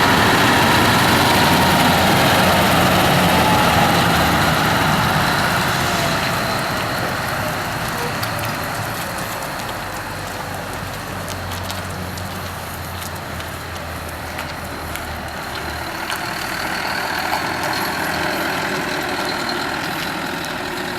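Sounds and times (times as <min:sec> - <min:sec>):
truck diesel engine running: 0:00.0 - 0:20.9.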